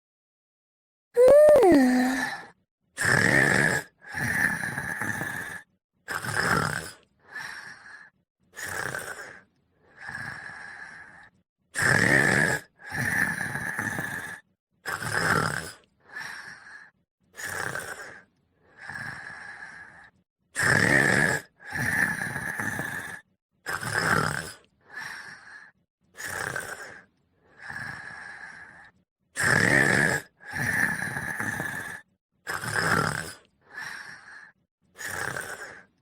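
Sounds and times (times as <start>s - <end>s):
person snoring: 1.2s - 7.4s, 35.0s - 35.9s.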